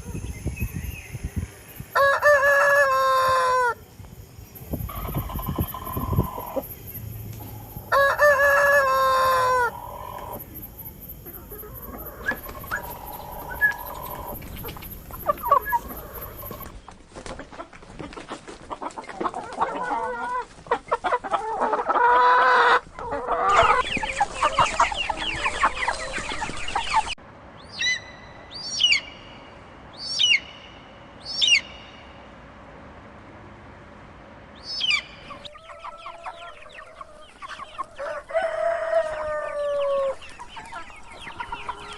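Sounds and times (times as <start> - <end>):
chickens clucking: 0.0 - 27.2, 34.8 - 41.9
rooster crowing: 1.9 - 3.8, 7.5 - 10.4, 11.4 - 14.4, 35.3 - 37.4, 38.0 - 40.2
sharply falling bird calls: 11.2 - 16.7.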